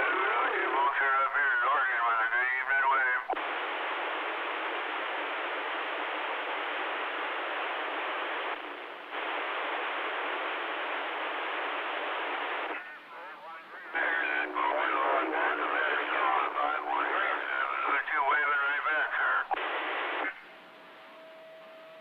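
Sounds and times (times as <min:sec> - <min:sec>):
radio static hiss: 0:00.0 - 0:21.3.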